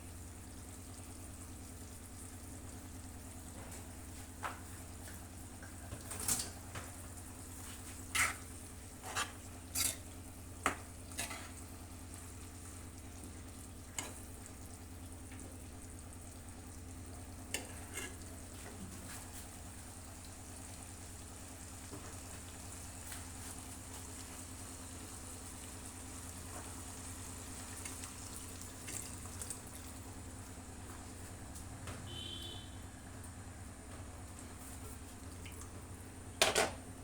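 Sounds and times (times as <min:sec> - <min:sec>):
meat sizzling in oil: 0:07.3 - 0:15.9, 0:20.2 - 0:29.9.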